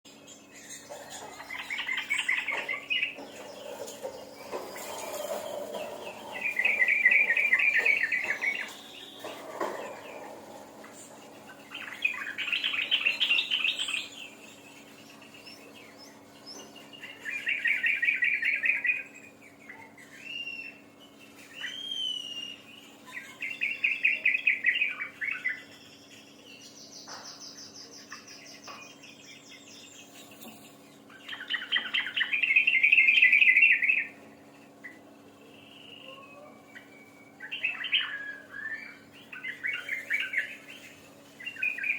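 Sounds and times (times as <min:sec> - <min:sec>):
faint steady hum: 0:00.1 - 0:41.9
songbird trilling: 0:00.3 - 0:41.9
rising whistled bird notes: 0:16.8 - 0:26.4, 0:34.8 - 0:41.9.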